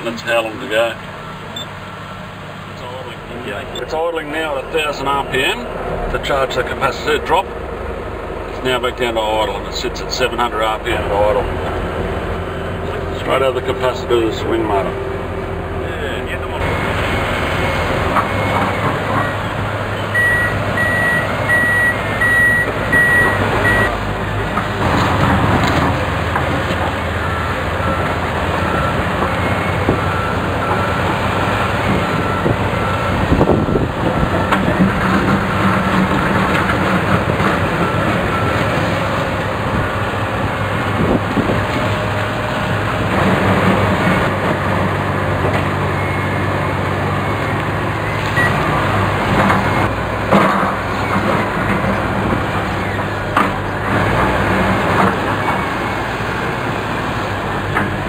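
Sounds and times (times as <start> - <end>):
excavator diesel engine running: 0.0 - 58.0
electronic warning beeper: 20.0 - 24.0.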